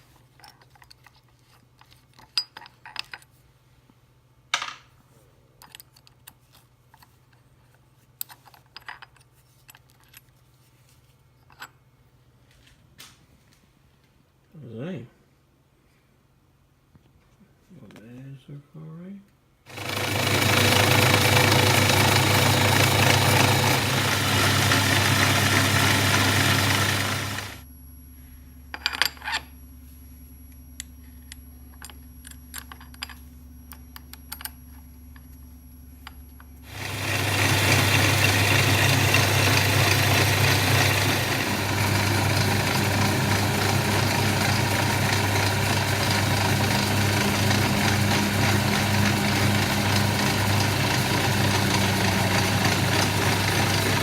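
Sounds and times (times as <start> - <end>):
milling machine cutting: 19.7 - 27.6, 36.7 - 54.0
low machine hum: 19.7 - 54.0.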